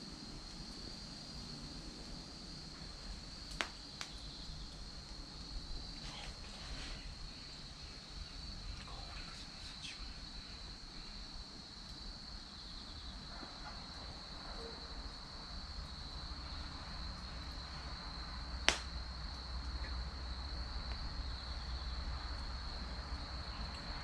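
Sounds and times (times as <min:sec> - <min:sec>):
wood fire burning: 0:00.0 - 0:24.0
firewood crackling pop: 0:02.7 - 0:07.2, 0:18.6 - 0:20.0.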